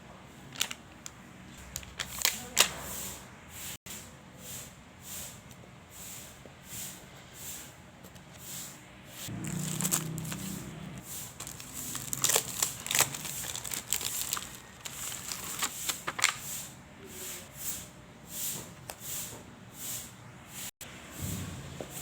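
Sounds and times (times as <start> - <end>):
paper crinkling: 0.5 - 2.8, 9.4 - 16.5.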